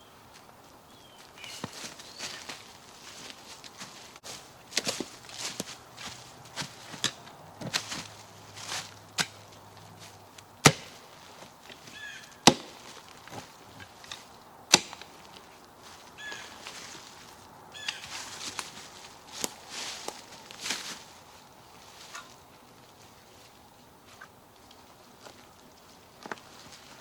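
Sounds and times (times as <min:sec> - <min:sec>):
logs knocking wood on wood: 0:10.6 - 0:11.0, 0:11.7 - 0:13.4, 0:14.7 - 0:15.2.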